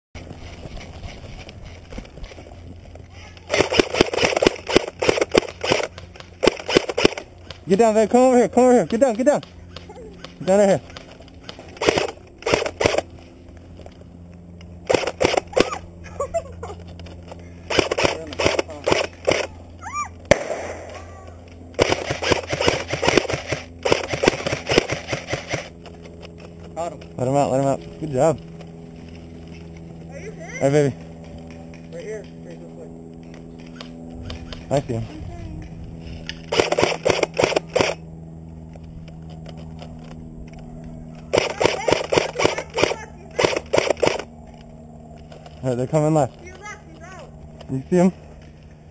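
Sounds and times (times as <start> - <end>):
airsoft gun shots: 3.5 - 7.6, 11.5 - 13.0, 14.9 - 15.8, 17.7 - 19.5, 20.3 - 21.0, 21.8 - 25.7, 36.5 - 38.0, 41.3 - 44.3.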